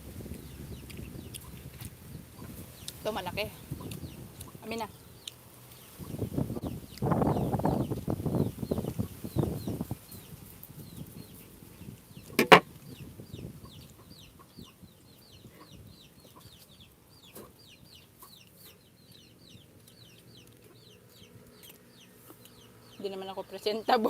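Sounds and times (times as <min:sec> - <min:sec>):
birds chirping: 0:00.3 - 0:24.0
sharp click: 0:12.4 - 0:12.6.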